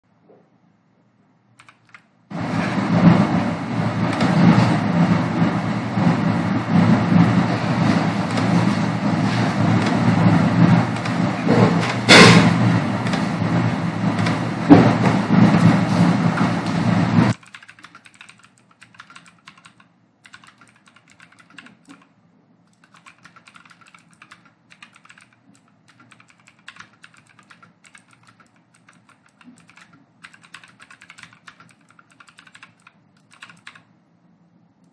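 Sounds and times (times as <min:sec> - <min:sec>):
computer keyboard typing: 0:01.6 - 0:02.1, 0:10.8 - 0:12.1, 0:13.0 - 0:13.3, 0:17.3 - 0:22.1, 0:22.7 - 0:33.9
loud continuous rumbling noise: 0:02.3 - 0:17.4.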